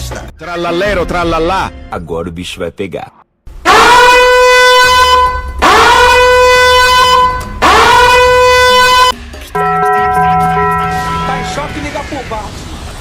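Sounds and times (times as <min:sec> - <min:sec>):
loud horn blasts: 0:03.6 - 0:12.0.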